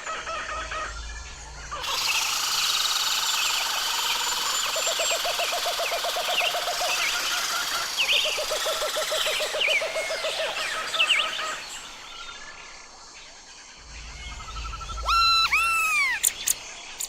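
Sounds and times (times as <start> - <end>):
low hum: 0.0 - 3.8, 10.8 - 16.9
small birds chirping: 0.0 - 17.0
chipmunk chuck calls: 1.8 - 11.8, 14.9 - 16.6.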